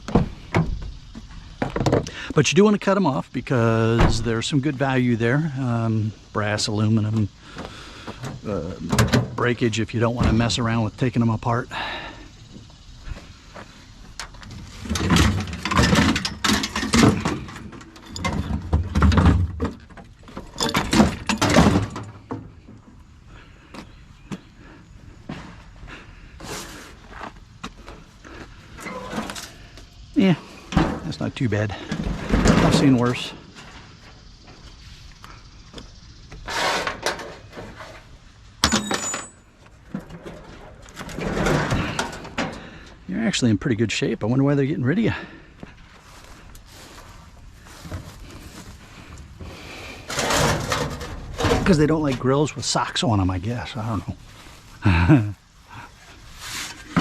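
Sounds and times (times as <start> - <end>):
metal grill parts clattering: 14.6 - 22.2, 36.5 - 38.0, 38.6 - 42.9, 49.9 - 51.9.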